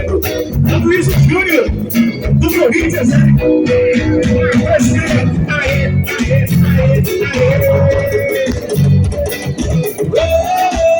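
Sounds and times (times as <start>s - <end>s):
guitar melody line: 0.0s - 10.9s
pulsing bass and drums: 0.0s - 10.9s.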